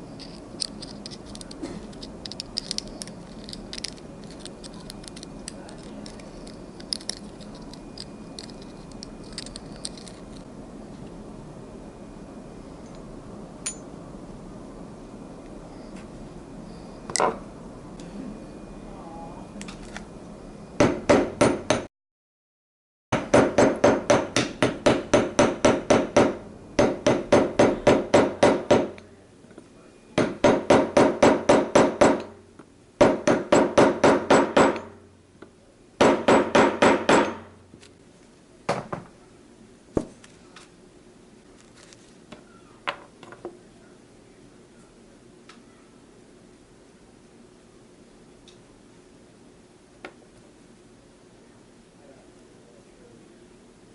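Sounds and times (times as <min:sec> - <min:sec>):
hammer tapping on metal: 0:20.8 - 0:21.9, 0:23.2 - 0:29.0, 0:30.2 - 0:32.3, 0:33.0 - 0:35.0, 0:36.0 - 0:37.5.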